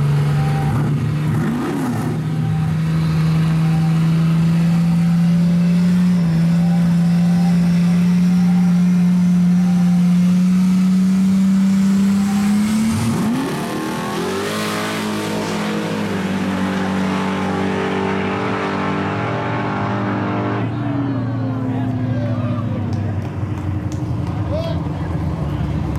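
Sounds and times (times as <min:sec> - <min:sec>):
race car engine at high revs: 0:00.0 - 0:21.0.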